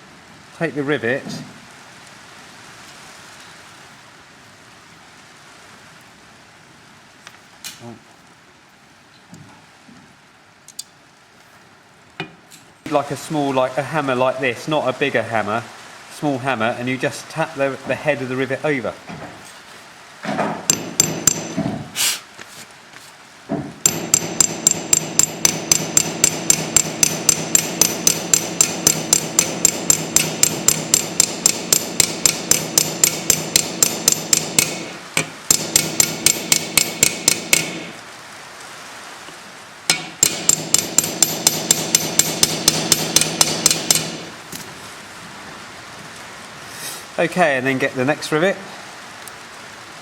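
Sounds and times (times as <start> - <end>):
hammer tapping on metal rivet: 20.7 - 21.6, 23.8 - 38.0, 39.9 - 44.3.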